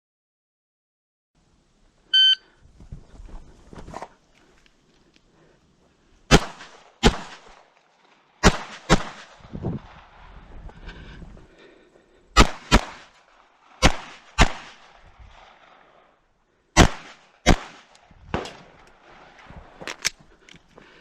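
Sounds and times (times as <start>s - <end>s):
shot timer beep: 2.2s - 2.4s
pistol shots: 6.3s - 7.7s, 8.4s - 10.0s, 12.4s - 16.0s, 16.8s - 19.5s.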